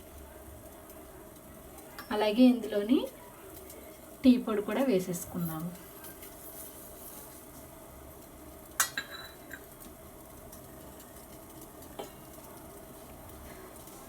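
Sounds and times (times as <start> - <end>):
faint steady hiss: 0.0 - 14.0
metal utensil clinking on pot: 8.8 - 9.7.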